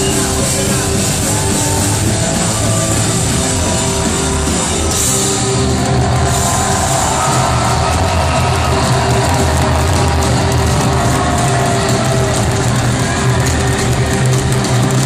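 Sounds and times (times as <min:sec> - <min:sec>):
drums: 0:00.0 - 0:15.0.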